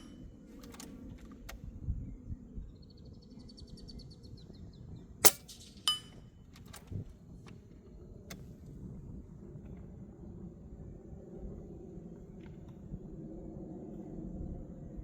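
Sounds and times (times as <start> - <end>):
air rifle shot: 5.2 - 6.0
metallic ring of steel target: 5.2 - 6.2.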